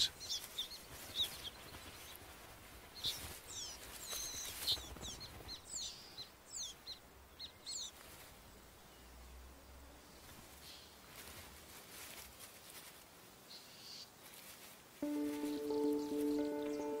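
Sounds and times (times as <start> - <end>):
songbirds chirping: 0.0 - 17.0.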